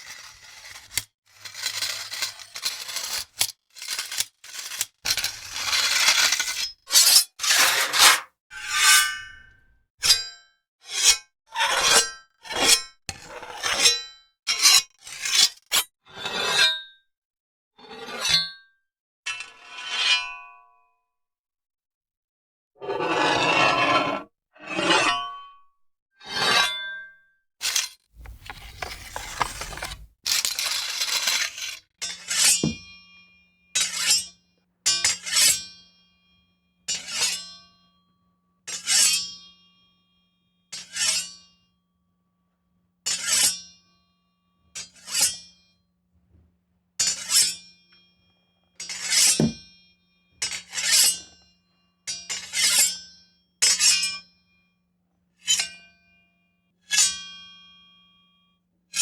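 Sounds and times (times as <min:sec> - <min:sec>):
metallic blade scraping: 0:00.0 - 0:09.4, 0:27.7 - 0:31.5.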